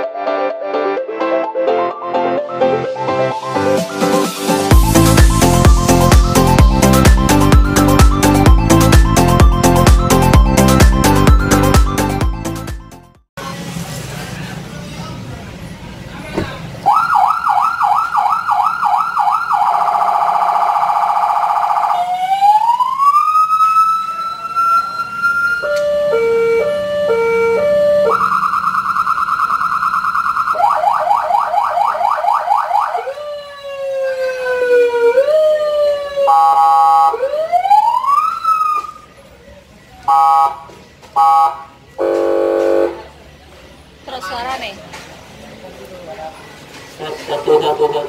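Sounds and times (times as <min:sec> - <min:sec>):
electronic siren cycling tones: 0:16.9 - 0:39.1.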